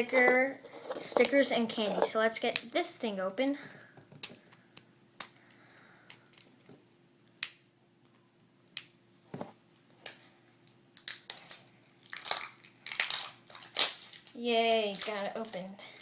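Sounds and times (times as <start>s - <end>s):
plastic packaging clicks and snaps: 10.6s - 15.7s
plastic crinkling: 11.0s - 16.0s.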